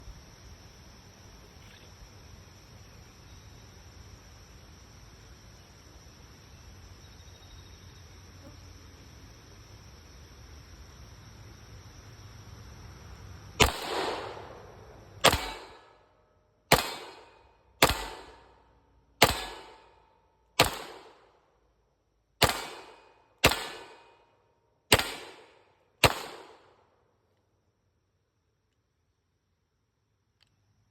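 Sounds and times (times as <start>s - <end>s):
pistol shots: 13.6s - 16.0s, 16.7s - 18.5s, 19.2s - 20.0s, 20.6s - 21.2s, 22.4s - 24.2s, 24.9s - 26.7s.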